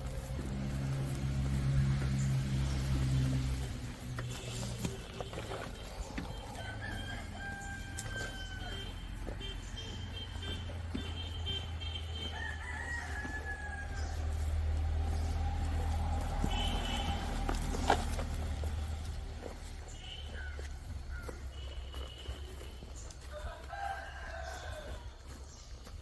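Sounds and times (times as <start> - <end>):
rooster crowing: 6.1 - 9.5, 12.0 - 17.1, 23.2 - 25.4.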